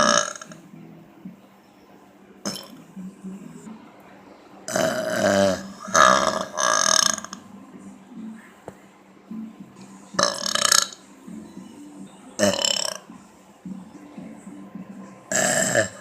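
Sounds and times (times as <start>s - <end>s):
woman burping: 0.0s - 0.6s, 2.5s - 2.7s, 4.7s - 7.4s, 10.2s - 11.0s, 12.4s - 13.0s, 15.3s - 16.0s.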